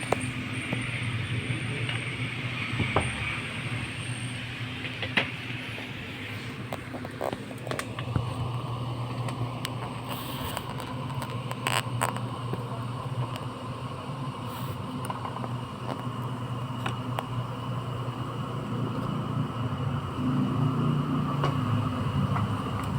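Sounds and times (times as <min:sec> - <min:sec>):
steady low hum: 0:00.0 - 0:22.9
loud crackle: 0:06.8 - 0:13.4.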